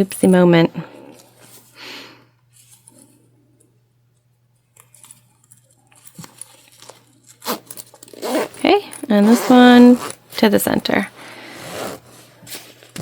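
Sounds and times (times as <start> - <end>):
fabric rustling: 5.7 - 13.0
zipper clicks: 7.4 - 10.2, 11.6 - 12.1.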